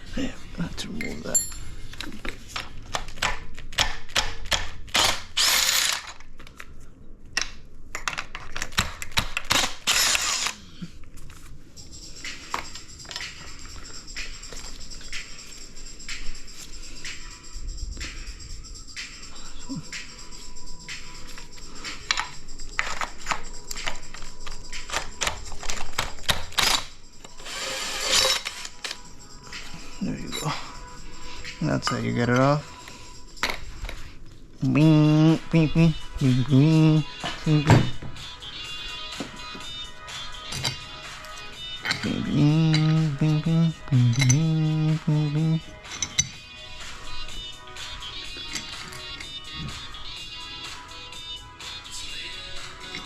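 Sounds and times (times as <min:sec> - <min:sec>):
tools clicking on metal: 0:01.0 - 0:06.3, 0:44.0 - 0:44.6, 0:45.8 - 0:46.4
power tool whirring: 0:05.0 - 0:06.2, 0:09.7 - 0:10.6, 0:26.6 - 0:28.8
tools clicking against metal: 0:43.9 - 0:44.6, 0:45.8 - 0:46.4.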